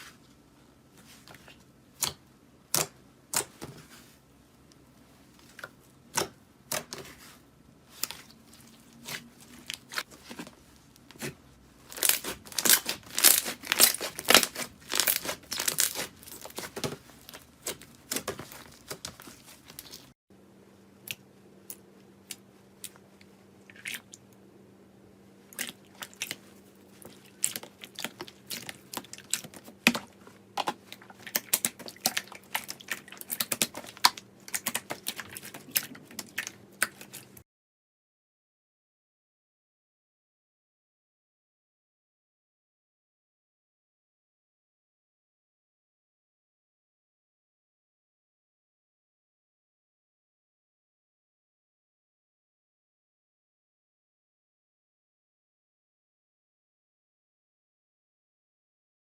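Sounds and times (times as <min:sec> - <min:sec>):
slime crackling: 0:07.9 - 0:20.1
slime clicking and popping: 0:12.0 - 0:16.8.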